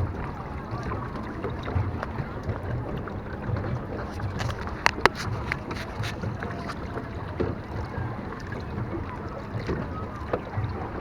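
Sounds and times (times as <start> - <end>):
boat engine rumble: 0.0 - 11.0
water sloshing against hull: 0.0 - 11.0
wind on microphone: 1.7 - 8.0.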